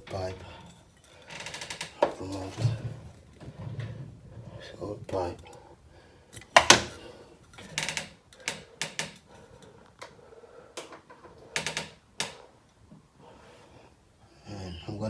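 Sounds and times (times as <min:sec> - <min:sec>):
clicks and knocks of tools: 0:06.3 - 0:10.2, 0:10.8 - 0:12.4.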